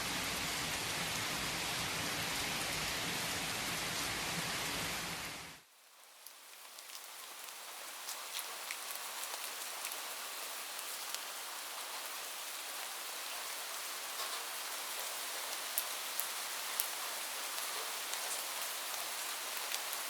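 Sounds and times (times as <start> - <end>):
rain hissing: 0.0 - 20.0
raindrop ticks: 6.2 - 10.1.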